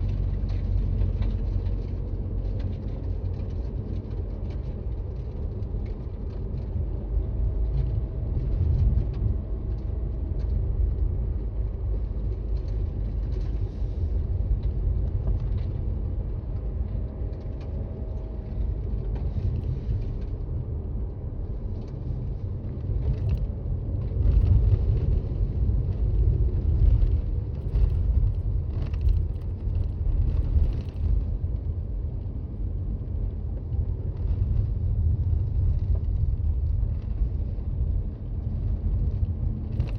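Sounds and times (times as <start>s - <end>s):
car road and engine rumble: 0.0s - 39.9s
crackles: 34.1s - 39.9s.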